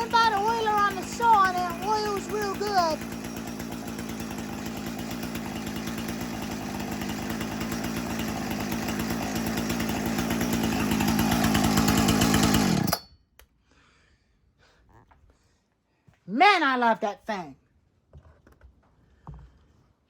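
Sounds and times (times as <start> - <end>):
chainsaw running: 0.0 - 13.1.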